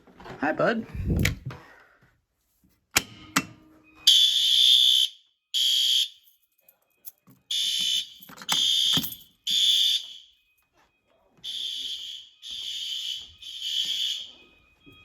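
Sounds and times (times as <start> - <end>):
fire alarm horn blasts: 4.0 - 6.2, 7.5 - 10.5, 11.4 - 15.0.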